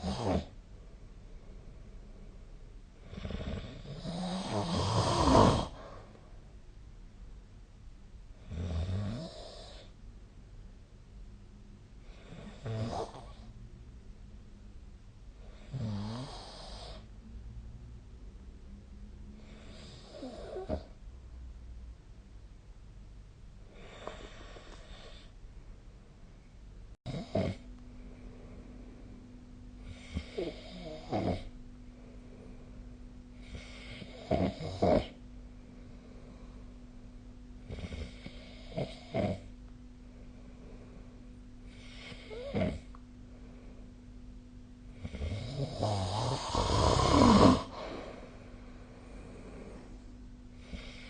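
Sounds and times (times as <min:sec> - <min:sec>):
person snoring: 0:00.0 - 0:00.6, 0:03.0 - 0:06.0, 0:08.4 - 0:09.9, 0:12.1 - 0:13.5, 0:15.5 - 0:17.1, 0:19.4 - 0:20.9, 0:27.1 - 0:27.7, 0:29.8 - 0:31.6, 0:33.4 - 0:35.2, 0:37.6 - 0:39.5, 0:41.7 - 0:43.0, 0:44.9 - 0:48.4, 0:49.0 - 0:51.0.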